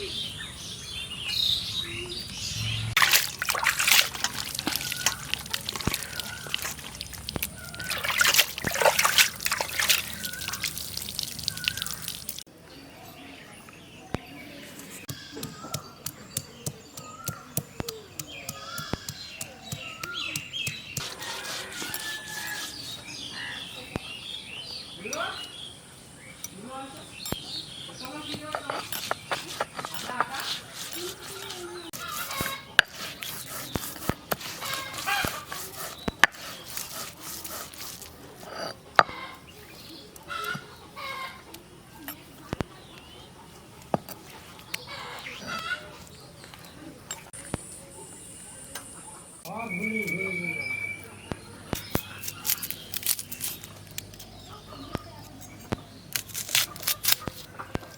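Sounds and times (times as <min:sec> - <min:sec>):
birds chirping: 0:00.0 - 0:57.9
chickens clucking: 0:38.3 - 0:47.4.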